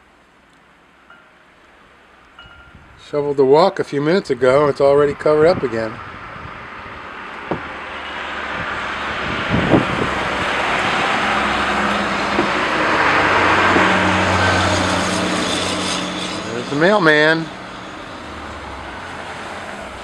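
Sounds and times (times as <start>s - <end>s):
low engine hum: 5.5s - 20.0s.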